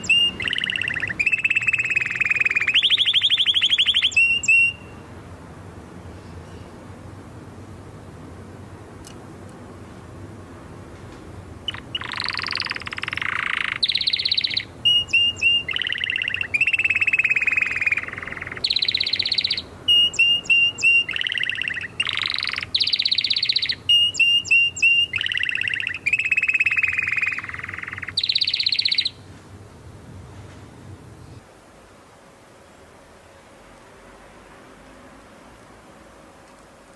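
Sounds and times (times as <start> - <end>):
canary chip notes: 0.0 - 5.0
canary singing trills: 0.0 - 5.1, 11.6 - 29.3.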